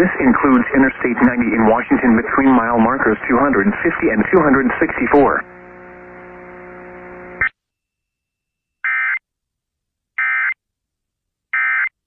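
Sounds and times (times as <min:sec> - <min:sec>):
low buzzing hum: 0:02.9 - 0:07.5.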